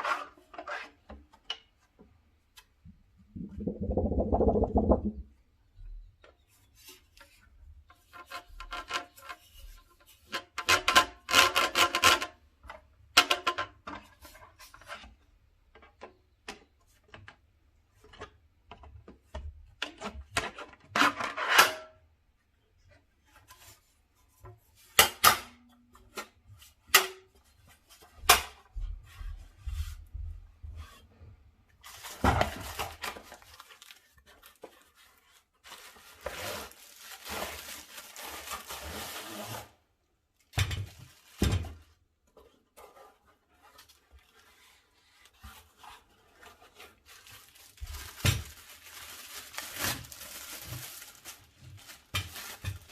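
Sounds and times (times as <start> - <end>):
packaging rubbing and scraping: 31.8 - 39.8, 42.8 - 52.9.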